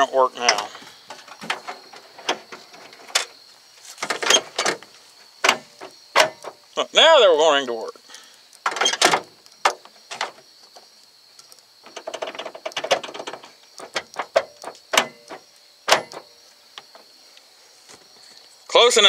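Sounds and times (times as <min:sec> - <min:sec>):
car door lock clicks and clunks: 0:12.7 - 0:16.3.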